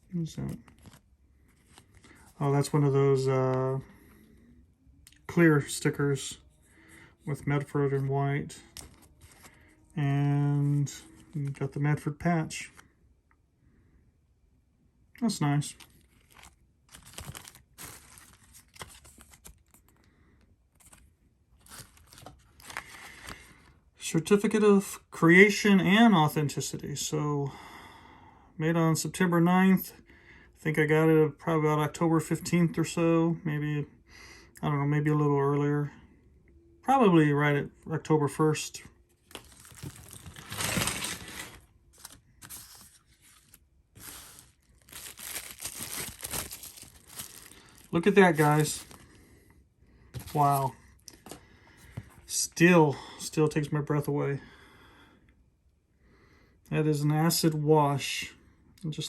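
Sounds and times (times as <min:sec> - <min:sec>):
paper and packaging rustling: 0:00.3 - 0:02.7, 0:07.6 - 0:09.8, 0:15.4 - 0:20.0, 0:20.8 - 0:23.7, 0:39.1 - 0:49.2, 0:50.2 - 0:52.3.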